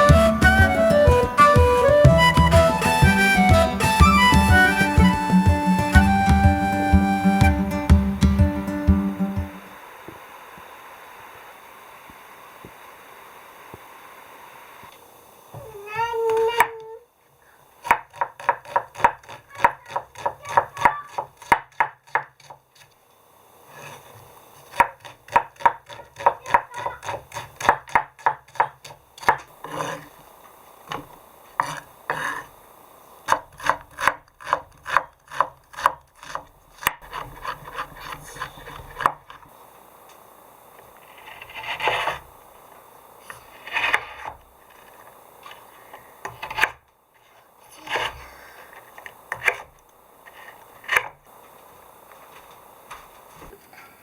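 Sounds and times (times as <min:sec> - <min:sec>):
knife chopping on wooden board: 0:17.8 - 0:22.6, 0:33.3 - 0:39.2.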